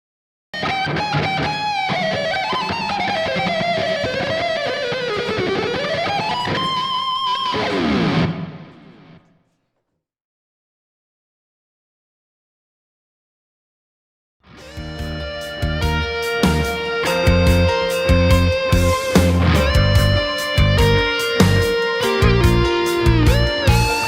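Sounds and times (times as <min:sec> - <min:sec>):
electric guitar lead: 0:00.6 - 0:09.3, 0:14.4 - 0:24.0
band backing music: 0:14.6 - 0:24.0.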